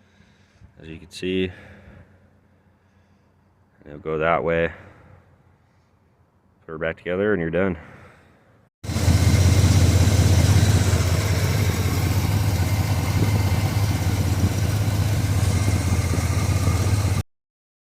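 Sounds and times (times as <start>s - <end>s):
truck engine idling: 8.9s - 17.2s.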